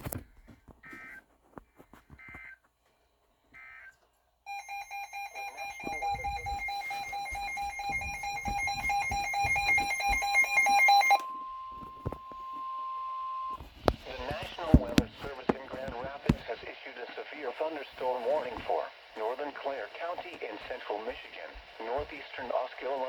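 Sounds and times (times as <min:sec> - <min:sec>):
digital data tones: 0:04.5 - 0:13.6.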